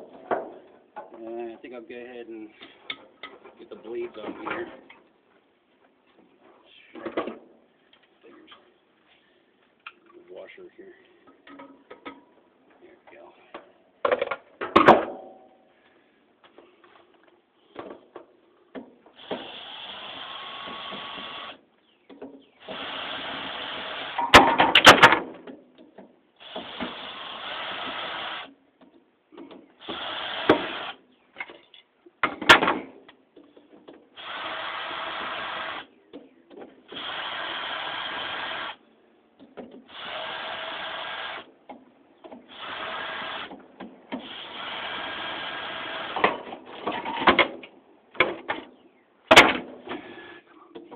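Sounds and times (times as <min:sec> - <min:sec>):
power drill running: 0:19.2 - 0:21.6, 0:34.2 - 0:35.9, 0:36.9 - 0:38.8, 0:40.0 - 0:41.5, 0:42.5 - 0:43.5, 0:44.3 - 0:46.2.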